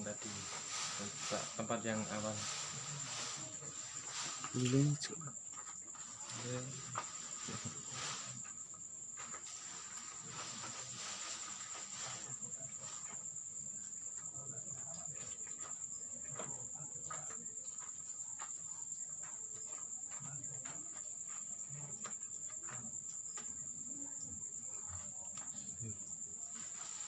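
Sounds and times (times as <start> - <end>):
soft knocks and rustles: 0.0 - 14.0
crickets trilling: 0.0 - 27.0.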